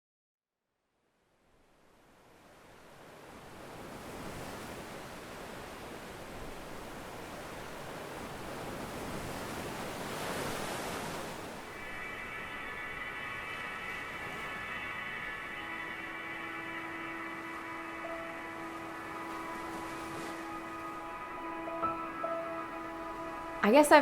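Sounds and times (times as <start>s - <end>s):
ocean surf washing on beach: 2.0s - 24.0s.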